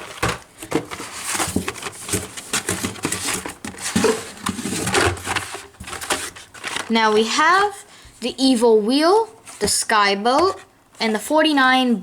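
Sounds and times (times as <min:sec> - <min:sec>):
clicks and taps of plastic packs: 0:00.0 - 0:07.4.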